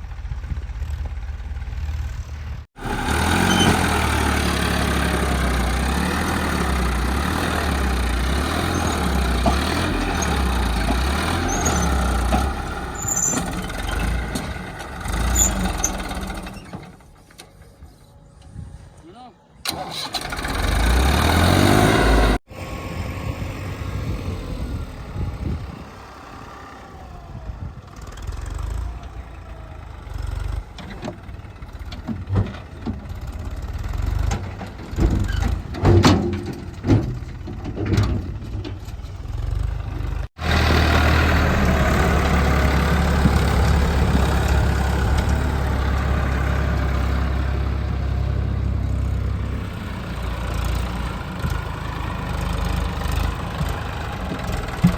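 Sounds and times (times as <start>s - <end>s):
heavy diesel engine running: 0.0s - 18.3s, 19.6s - 54.9s
metallic clanks and knocks: 30.7s - 39.4s.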